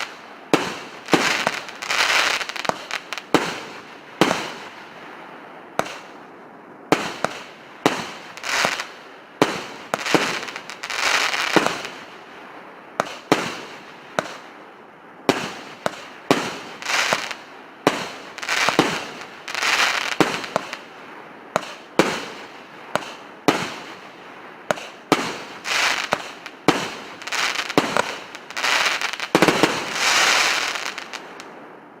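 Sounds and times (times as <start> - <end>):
crackling firework hiss: 0.0 - 6.3, 6.9 - 14.6, 15.2 - 32.0
firework launch thumps and bursts: 5.8 - 6.1, 21.5 - 22.3, 24.7 - 25.4.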